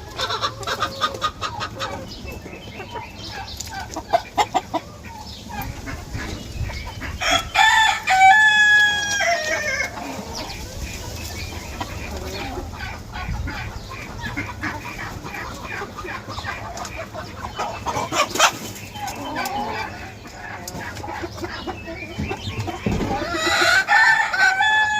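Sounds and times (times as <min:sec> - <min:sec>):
chickens clucking: 0:00.0 - 0:24.9
rooster crowing: 0:07.2 - 0:10.0, 0:23.2 - 0:24.9.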